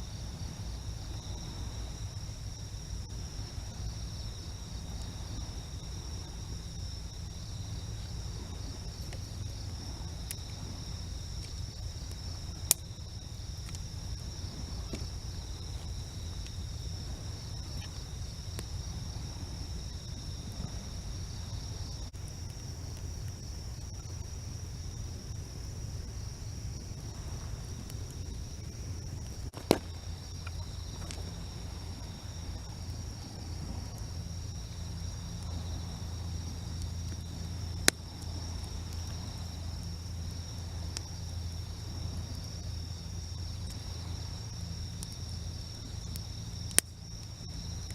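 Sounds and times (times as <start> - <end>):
crickets and insects chorus: 0.0 - 47.9
faint ticks: 8.8 - 10.7, 13.6 - 13.9, 36.7 - 40.1, 43.6 - 43.9, 44.7 - 47.9.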